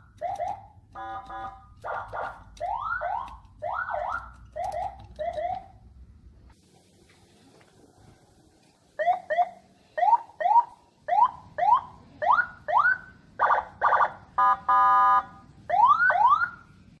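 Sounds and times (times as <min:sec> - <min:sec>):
electronic siren cycling tones: 0:00.0 - 0:05.8.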